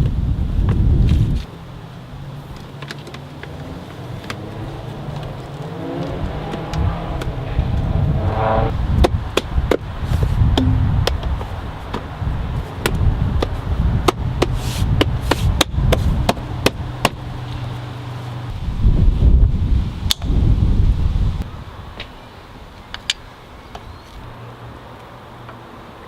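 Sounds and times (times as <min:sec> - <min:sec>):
low rumble: 0:06.7 - 0:09.0, 0:10.5 - 0:11.3
sharp knocks and clicks: 0:10.6 - 0:11.3.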